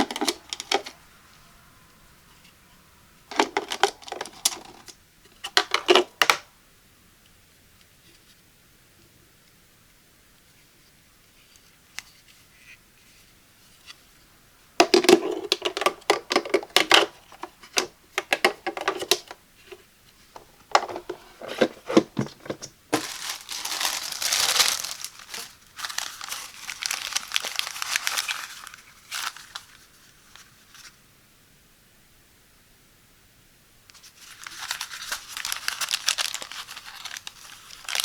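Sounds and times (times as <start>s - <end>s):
packaging crackling: 0.0s - 1.0s, 3.3s - 4.9s, 14.8s - 19.8s, 20.4s - 30.5s, 33.9s - 38.0s
packaging rustling: 0.0s - 1.0s, 3.3s - 4.9s, 14.8s - 30.9s, 33.9s - 38.0s.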